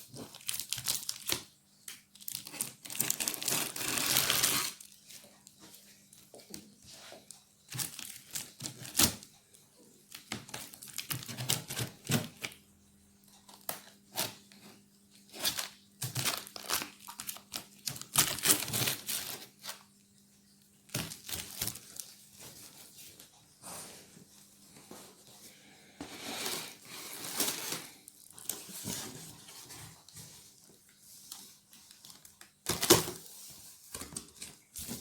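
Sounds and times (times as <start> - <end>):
cardboard and plastic crinkling: 0.0 - 1.5, 2.1 - 5.4, 6.3 - 9.2, 10.1 - 12.6, 13.5 - 19.9, 20.9 - 23.3, 26.1 - 35.0.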